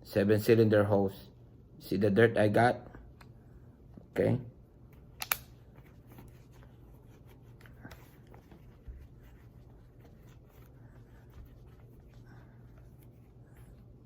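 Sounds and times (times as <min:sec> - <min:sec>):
cloth rubbing on metal: 0:05.6 - 0:14.0.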